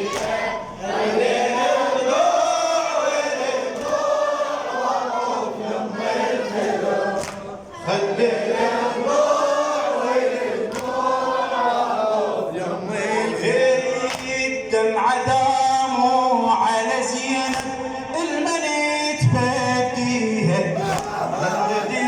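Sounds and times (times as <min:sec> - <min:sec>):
voices singing in chorus: 0:00.0 - 0:22.0.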